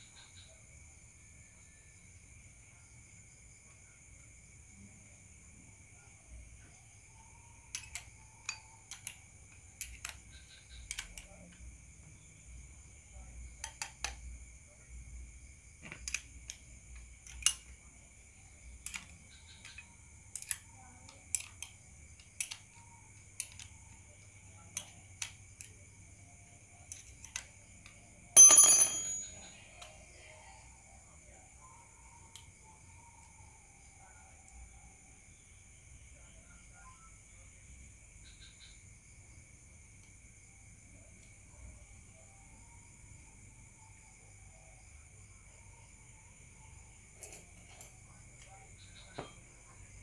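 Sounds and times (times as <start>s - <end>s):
high insect trill: 0.0s - 50.0s
metal tools clicking and knocking: 17.2s - 17.8s, 28.4s - 29.9s, 47.2s - 48.0s
loud ringing metallic clang: 28.4s - 29.5s.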